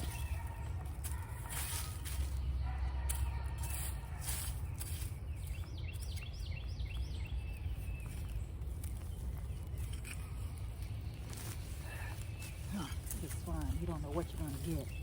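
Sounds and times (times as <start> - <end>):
rustling scrapes: 0.0 - 2.5
bird chirping: 1.4 - 15.0.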